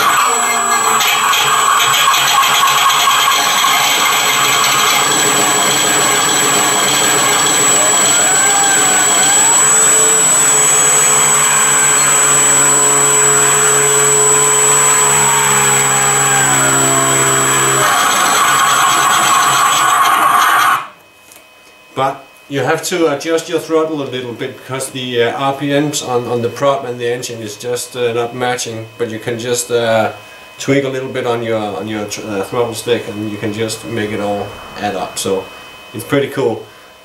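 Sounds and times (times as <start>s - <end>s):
simulated engine drone from loudspeaker: 0.0s - 19.9s, 22.0s - 36.8s
electric motor and propeller whirring: 0.0s - 21.0s.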